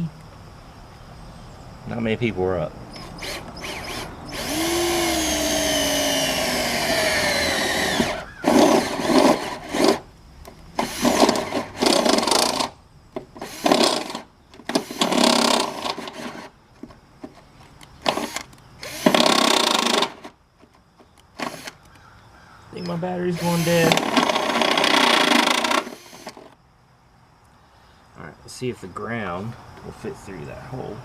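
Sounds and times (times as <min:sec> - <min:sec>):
cordless drill boring through metal: 0:02.9 - 0:10.0, 0:10.8 - 0:12.7, 0:13.4 - 0:16.5, 0:18.0 - 0:20.3, 0:21.4 - 0:21.8, 0:22.8 - 0:26.6.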